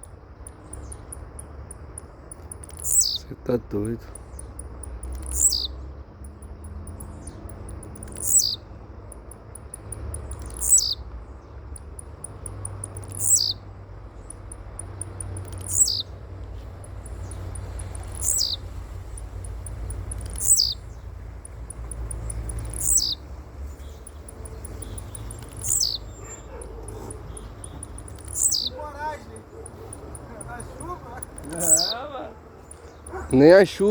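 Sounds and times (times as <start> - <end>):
bird whistling: 2.6 - 3.3, 5.1 - 5.8, 8.0 - 8.6, 10.4 - 11.0, 13.0 - 13.6, 15.5 - 16.1, 17.2 - 18.7, 19.4 - 21.0, 21.8 - 33.9
steady low rumble: 11.3 - 33.9
fast high ticking: 11.7 - 33.9.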